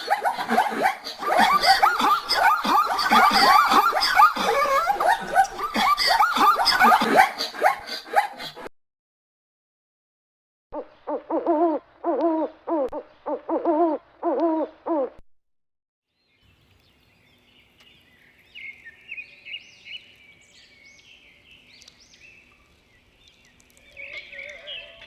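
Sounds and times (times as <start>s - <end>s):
birds chirping: 0.0s - 7.1s, 16.1s - 25.0s.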